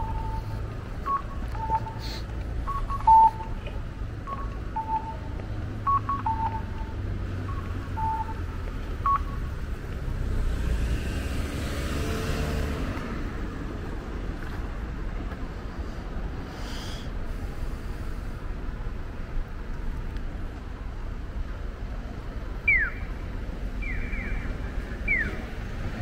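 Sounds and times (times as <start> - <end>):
low street rumble: 0.0 - 26.0
two-note electronic beeps: 2.6 - 3.6, 4.3 - 9.5, 23.8 - 25.4
rushing hiss of passing vehicle: 10.1 - 13.6, 15.6 - 18.7.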